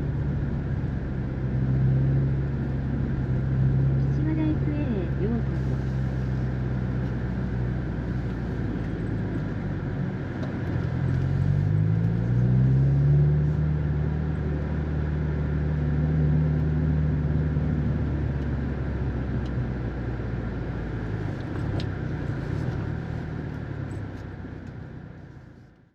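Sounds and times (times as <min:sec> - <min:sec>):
car engine heard from inside: 0:00.0 - 0:25.9.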